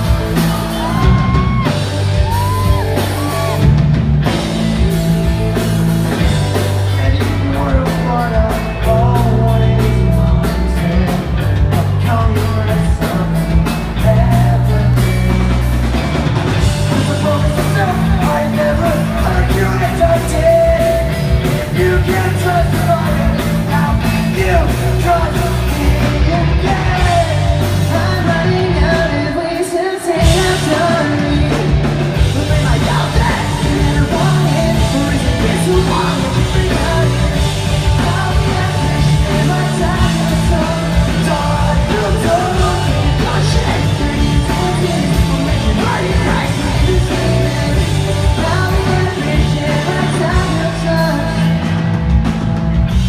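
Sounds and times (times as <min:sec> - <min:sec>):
person singing and shouting: 0:00.0 - 0:03.8, 0:32.4 - 0:51.6
pop-punk band playing: 0:00.0 - 0:53.0.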